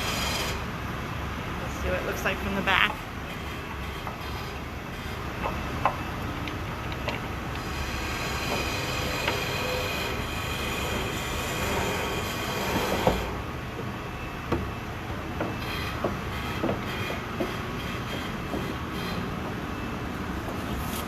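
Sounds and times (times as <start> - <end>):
mechanical rumble with whine: 0.0 - 21.0
knocks and clatter: 15.4 - 19.2.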